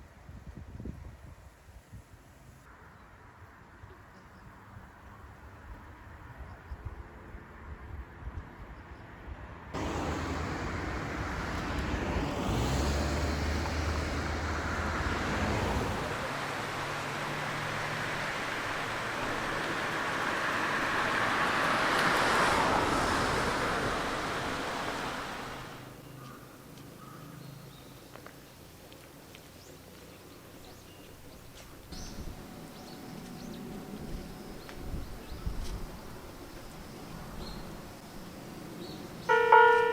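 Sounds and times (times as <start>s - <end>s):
diesel railcar passing: 9.8s - 39.9s.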